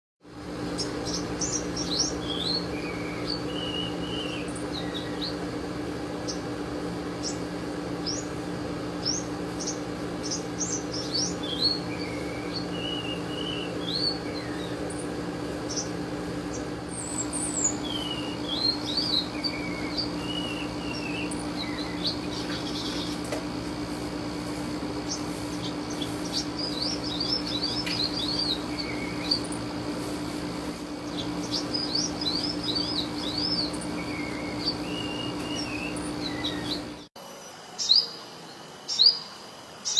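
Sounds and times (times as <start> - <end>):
steady low hum: 0.2 - 39.9
songbird chirping and whistling: 0.7 - 5.5, 9.0 - 23.3, 25.0 - 30.2, 31.0 - 38.2.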